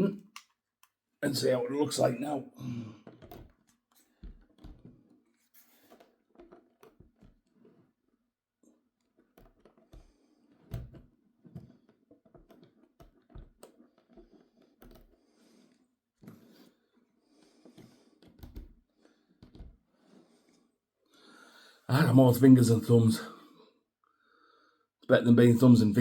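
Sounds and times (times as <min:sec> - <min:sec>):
hands handling model locomotive: 0:00.3 - 0:02.1, 0:02.8 - 0:21.6.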